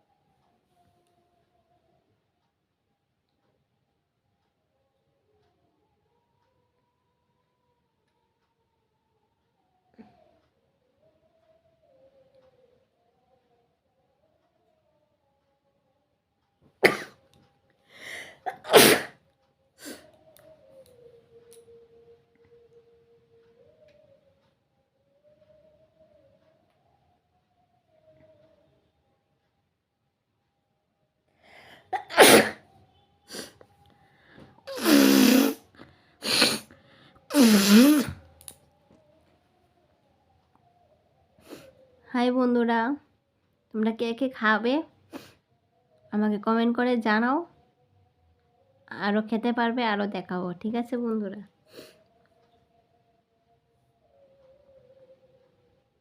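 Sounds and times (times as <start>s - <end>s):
person sneezing: 16.8s - 17.1s, 18.0s - 19.1s, 32.0s - 32.6s, 34.7s - 35.6s, 36.2s - 36.7s, 37.3s - 38.2s
soft breaths: 17.8s - 18.6s, 31.3s - 31.9s, 33.2s - 39.4s, 40.8s - 42.1s.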